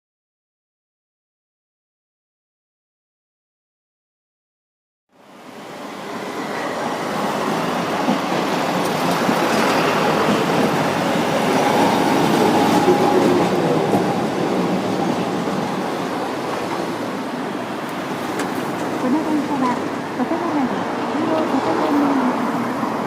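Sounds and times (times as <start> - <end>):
streetcar wheels rumbling on rails: 5.1 - 23.0.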